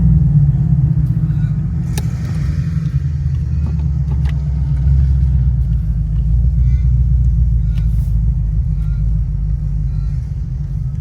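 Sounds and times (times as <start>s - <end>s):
car engines idling: 0.0s - 11.0s.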